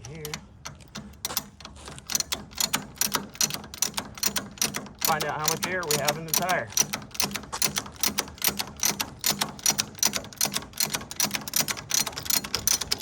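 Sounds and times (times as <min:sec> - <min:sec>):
ratchet jack pawl clicking: 0:00.0 - 0:13.0.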